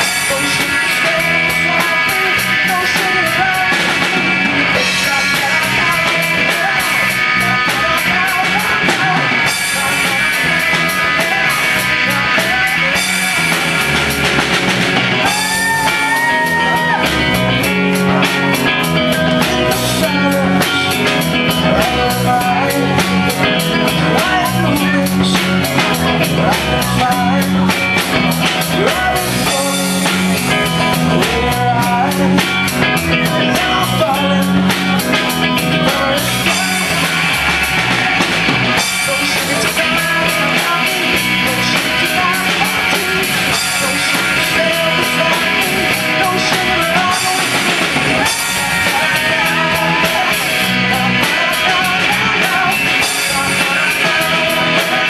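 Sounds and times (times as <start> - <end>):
bass guitar: 0.0 - 55.0
drum kit beat: 0.0 - 55.0
electric guitar: 0.0 - 55.0.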